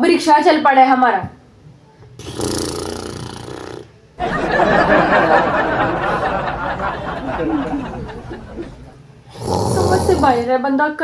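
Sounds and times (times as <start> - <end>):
man snoring loudly: 2.2 - 3.9, 9.3 - 10.5.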